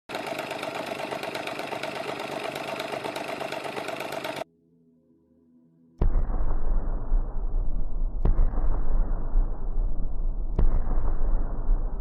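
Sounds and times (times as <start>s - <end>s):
rotary engine running: 0.1s - 4.4s.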